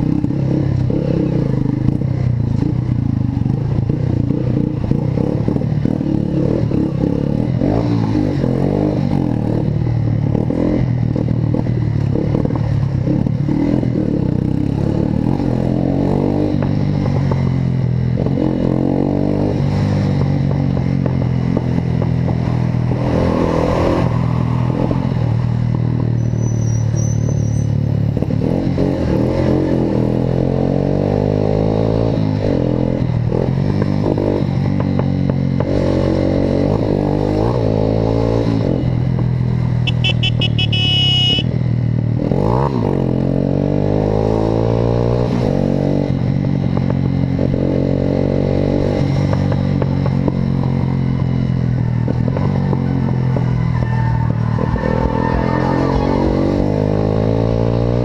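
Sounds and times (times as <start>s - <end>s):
motorcycle engine revving: 0.0s - 58.0s
short high-pitched horn-like tone: 39.9s - 41.5s.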